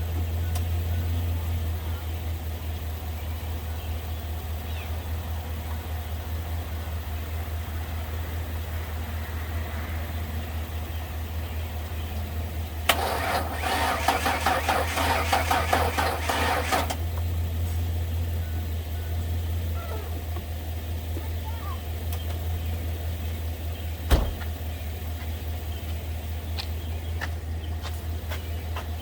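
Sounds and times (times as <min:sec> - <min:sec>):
starter cranking engine: 0:12.8 - 0:17.3.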